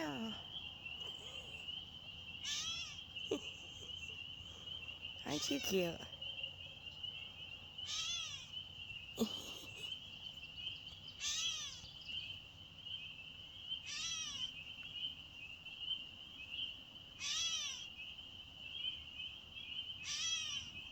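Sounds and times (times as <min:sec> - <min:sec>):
catbird mewing call: 0:02.4 - 0:03.9, 0:07.8 - 0:08.6, 0:11.2 - 0:12.0, 0:13.8 - 0:14.6, 0:17.2 - 0:18.0, 0:20.0 - 0:20.9.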